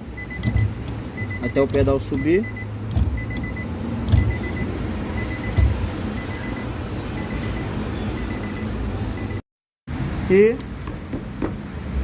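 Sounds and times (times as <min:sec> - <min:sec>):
car warning chime beeping: 0:00.1 - 0:09.4.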